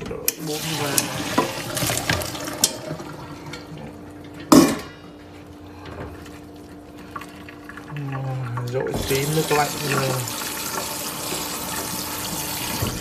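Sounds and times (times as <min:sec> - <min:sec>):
water pouring and splashing: 0:06.6 - 0:13.0.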